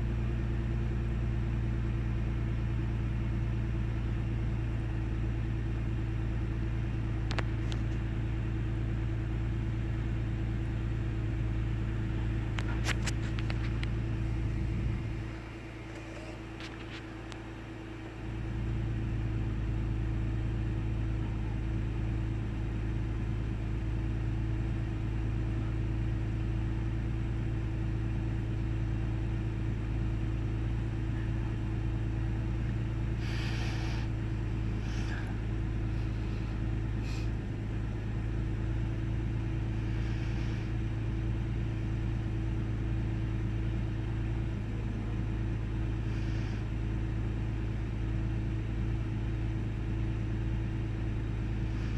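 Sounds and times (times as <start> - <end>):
car engine rough idling: 0.0 - 51.9.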